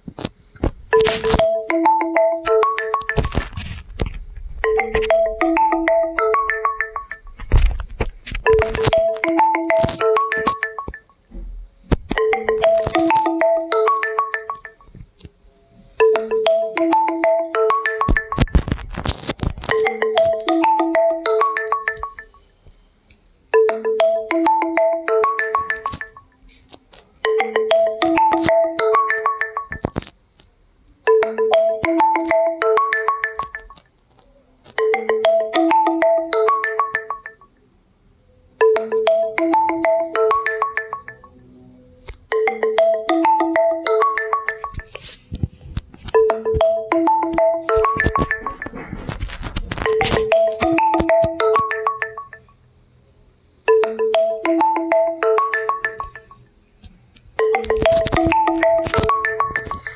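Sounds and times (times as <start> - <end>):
phone ringtone melody: 0.9 - 3.8, 4.6 - 7.7, 8.4 - 11.2, 12.1 - 15.0, 16.0 - 22.6, 23.5 - 26.5, 27.2 - 30.1, 31.1 - 33.8, 34.8 - 37.6, 38.6 - 41.7, 42.3 - 45.2, 46.0 - 52.6, 53.7 - 56.5, 57.4 - 59.9.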